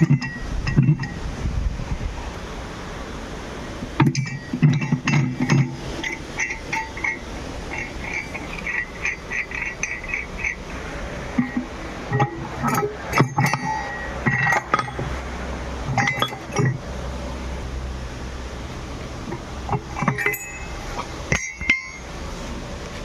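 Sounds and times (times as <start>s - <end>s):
metal clinks and knocks: 0.0s - 1.2s, 4.0s - 16.9s, 19.2s - 22.2s.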